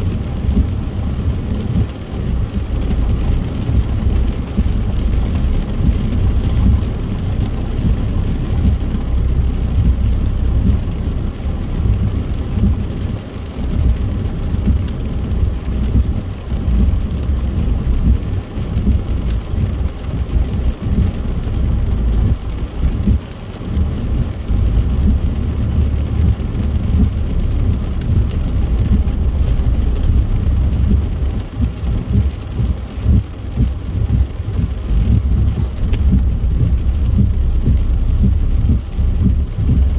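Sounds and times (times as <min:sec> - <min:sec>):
faint raindrop ticks: 0:00.0 - 0:39.9
rain hissing: 0:00.0 - 0:39.9
tyre noise on wet road: 0:00.0 - 0:39.9.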